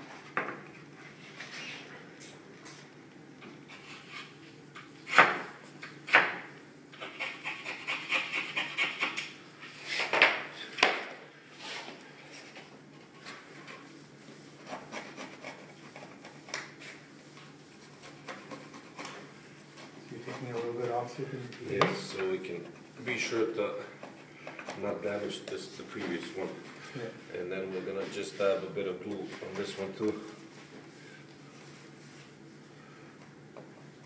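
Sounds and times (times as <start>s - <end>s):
rasping strokes on wood: 7.0s - 9.2s.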